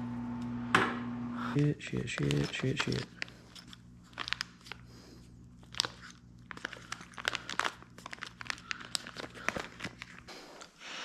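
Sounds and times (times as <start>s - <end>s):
small metal parts clicking: 2.1s - 4.4s.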